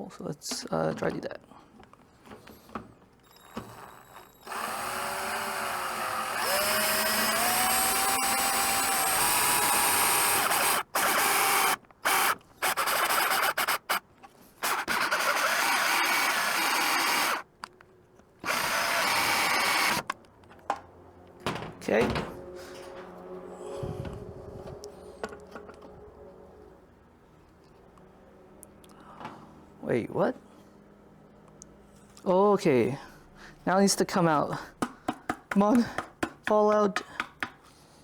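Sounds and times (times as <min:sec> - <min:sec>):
power drill boring: 0:03.2 - 0:14.0, 0:14.6 - 0:17.5, 0:18.4 - 0:20.2.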